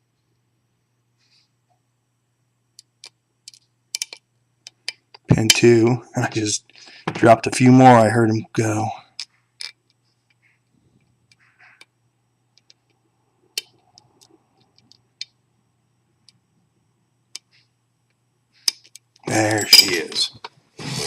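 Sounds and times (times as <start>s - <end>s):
faint low hum: 0.0s - 21.0s
lock pick metallic clicks: 3.5s - 4.2s.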